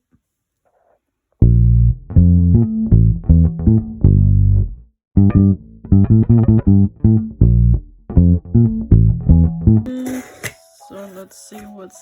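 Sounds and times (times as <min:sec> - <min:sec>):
music with deep bass line: 0:01.4 - 0:09.9.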